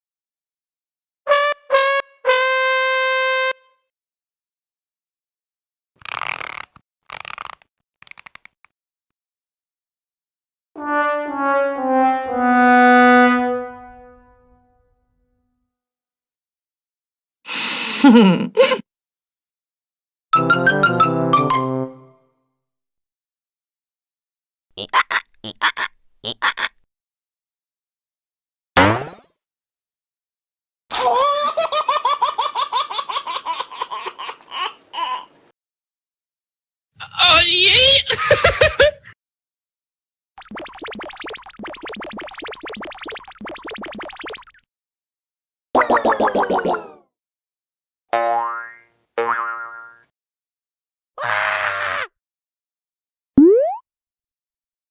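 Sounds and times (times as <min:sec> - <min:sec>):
quick run of clicks: 0:06.0 - 0:08.7
sad trombone sound effect: 0:10.8 - 0:14.3
high-pitched rhythmic laugh: 0:24.8 - 0:26.7, 0:37.8 - 0:39.1.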